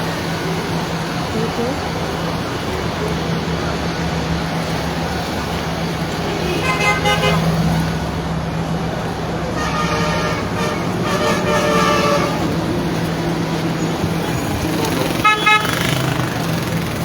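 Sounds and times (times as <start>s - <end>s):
road traffic: 0.0s - 17.0s
vehicle horns tooting: 6.3s - 7.6s, 9.5s - 12.6s, 14.2s - 16.4s.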